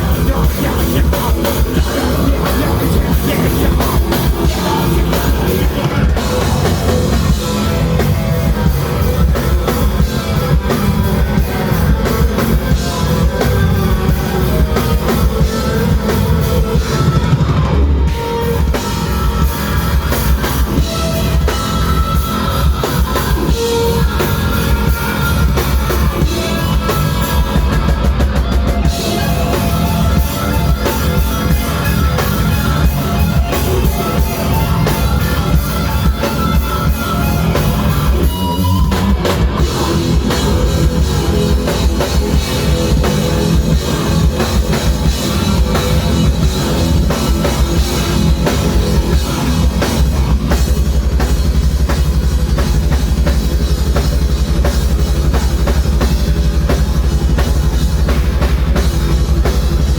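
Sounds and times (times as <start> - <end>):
loud rock music: 0.0 - 59.9.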